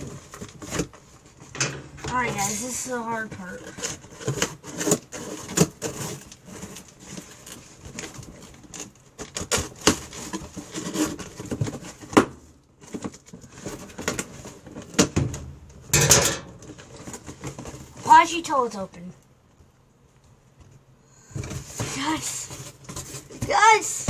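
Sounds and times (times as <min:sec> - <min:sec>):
packing tape ripping off cardboard: 0:03.6 - 0:15.2.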